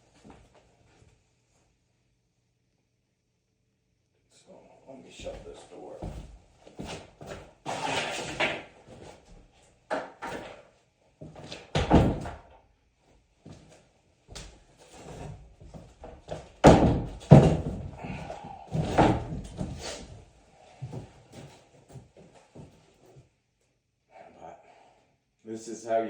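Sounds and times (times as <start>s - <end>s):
door banging shut: 11.7s - 12.4s, 16.6s - 17.8s.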